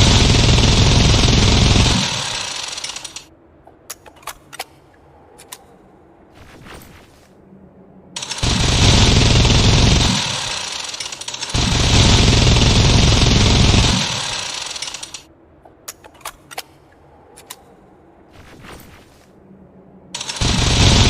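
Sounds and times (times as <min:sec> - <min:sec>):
minigun firing rapid bursts: 0:00.0 - 0:03.3, 0:08.2 - 0:15.2, 0:20.2 - 0:21.0
sharp clicks: 0:00.0 - 0:03.3, 0:10.0 - 0:15.3.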